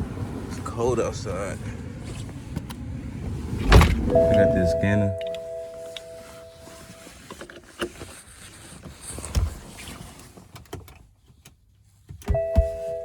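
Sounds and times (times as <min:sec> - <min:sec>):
low thump: 0:03.6 - 0:04.6
steady tones: 0:03.7 - 0:07.0.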